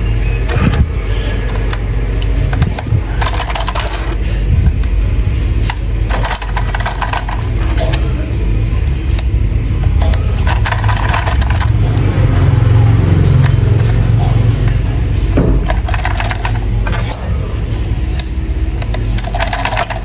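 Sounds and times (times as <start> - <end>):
toy train motor hum: 0.0 - 20.0
plastic clicks and rattles: 0.5 - 5.0, 8.8 - 20.0.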